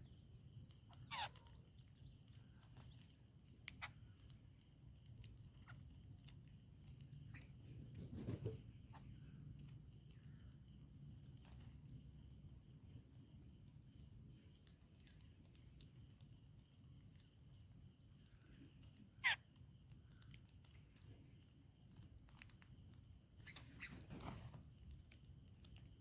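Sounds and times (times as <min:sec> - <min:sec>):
high-pitched insect chorus: 0:00.0 - 0:26.0
small clicks: 0:18.8 - 0:21.2.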